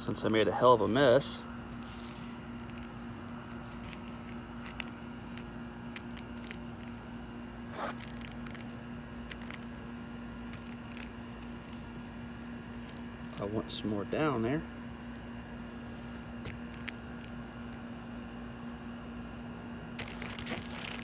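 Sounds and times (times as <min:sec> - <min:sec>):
electrical hum: 0:00.0 - 0:21.0
light clicks and handling noises: 0:01.7 - 0:13.6.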